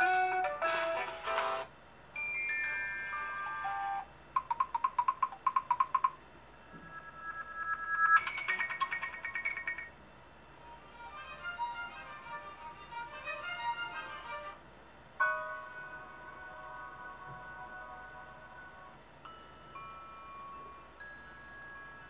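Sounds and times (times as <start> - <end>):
fast pulsing phone beeps: 4.4 - 9.9
falling chime-like phone tone: 6.7 - 10.0.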